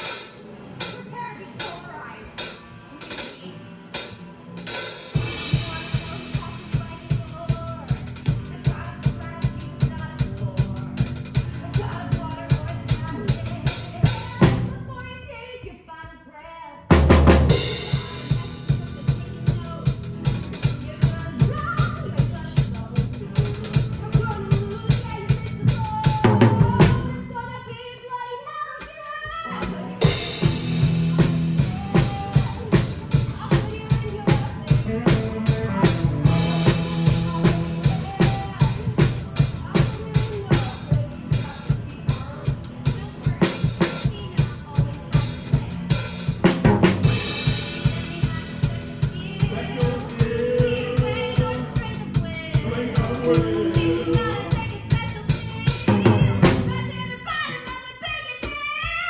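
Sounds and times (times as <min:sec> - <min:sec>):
drum kit playing rock beat: 0:00.0 - 0:14.9, 0:16.9 - 0:27.4, 0:28.8 - 0:59.0
pit band music: 0:00.0 - 0:15.0, 0:16.9 - 0:27.4, 0:28.8 - 0:59.0.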